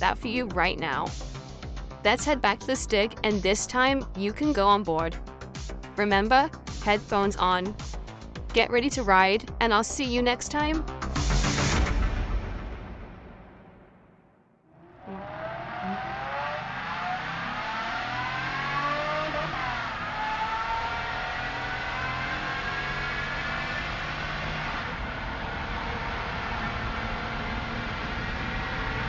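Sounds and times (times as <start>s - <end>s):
car engine accelerating: 14.7s - 29.0s.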